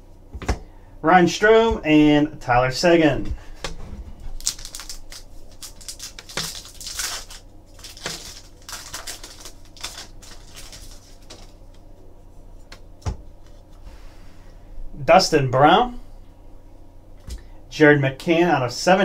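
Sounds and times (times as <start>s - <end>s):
foil pack crinkling: 4.2s - 11.8s.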